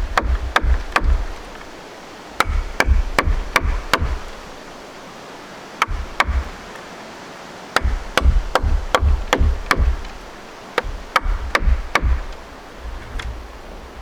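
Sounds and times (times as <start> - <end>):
baton knocking on knife spine: 7.8 - 10.2.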